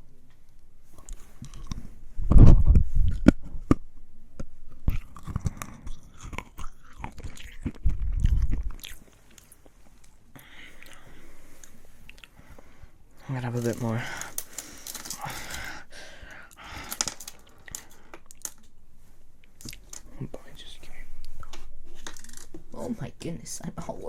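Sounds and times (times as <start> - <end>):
crunching hard sweets: 4.8 - 10.2, 13.4 - 18.6.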